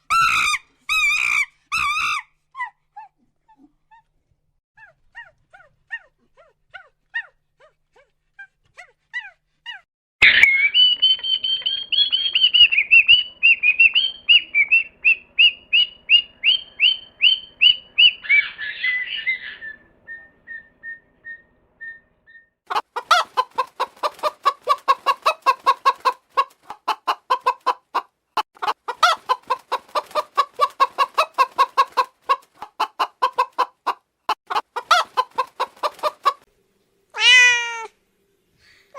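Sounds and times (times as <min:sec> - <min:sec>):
chickens calling: 0:10.2 - 0:20.7, 0:22.7 - 0:36.5
chickens clucking: 0:10.8 - 0:19.7, 0:22.7 - 0:36.5.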